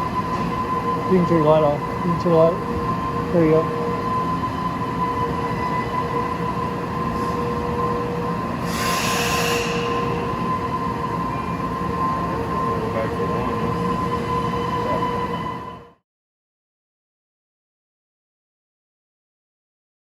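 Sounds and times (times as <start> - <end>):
machine running with whine: 0.0 - 16.0.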